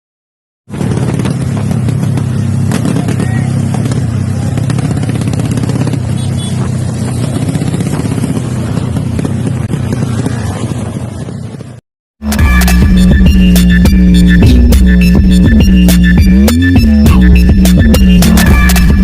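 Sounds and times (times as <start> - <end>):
motorcycle engine running loud: 0.7 - 11.8
electronic music: 12.2 - 19.0.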